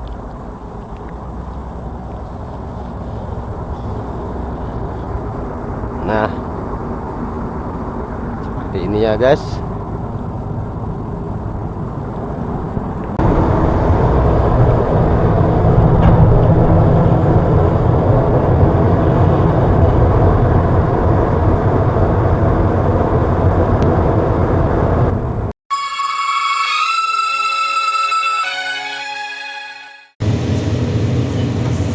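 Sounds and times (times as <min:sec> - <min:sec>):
excavator diesel engine running: 0:00.0 - 0:25.5.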